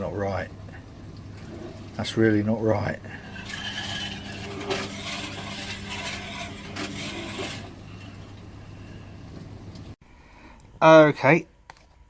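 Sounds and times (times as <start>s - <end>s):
washing machine motor hum: 0.0s - 10.0s
rough scraping and rasping: 2.9s - 8.5s.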